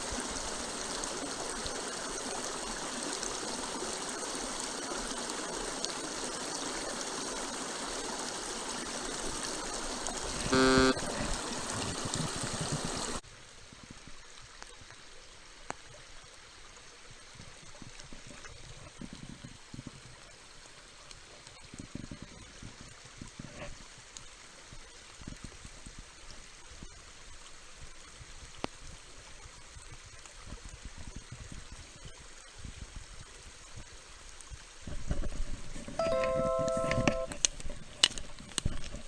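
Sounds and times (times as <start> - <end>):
stream water rushing: 0.0 - 13.2
loud horn-like tone: 10.5 - 11.1.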